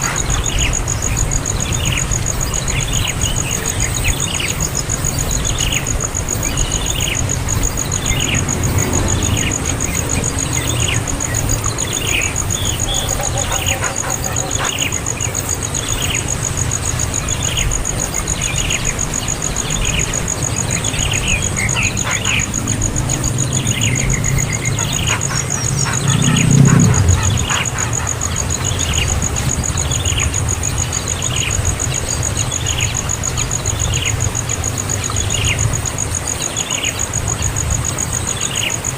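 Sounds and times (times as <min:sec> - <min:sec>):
high insect trill: 0:00.0 - 0:38.9
low rumbling background noise: 0:00.0 - 0:38.9
young bird calling: 0:09.3 - 0:15.0.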